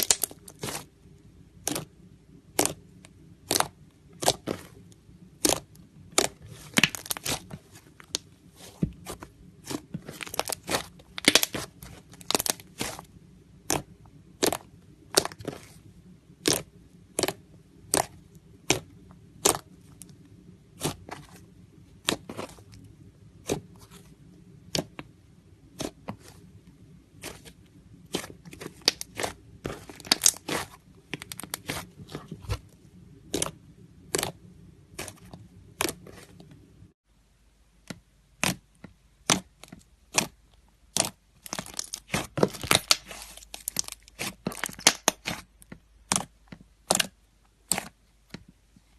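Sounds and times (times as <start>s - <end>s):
faint low hum: 0.0s - 48.9s.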